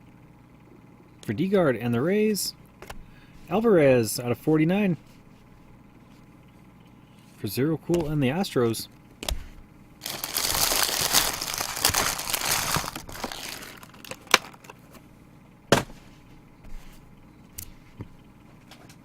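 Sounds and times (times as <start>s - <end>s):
foil wrapper tearing and crinkling: 10.0s - 14.8s.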